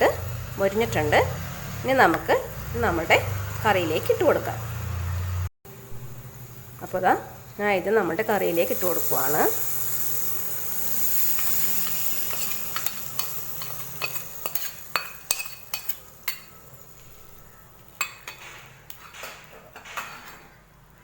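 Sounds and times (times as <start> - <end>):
hot oil sizzling: 0.0 - 18.4
metal spoon scraping a pan: 9.6 - 20.2.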